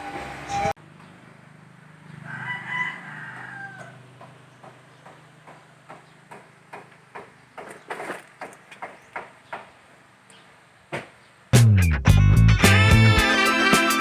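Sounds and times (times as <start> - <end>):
rooster crowing: 2.2 - 4.1.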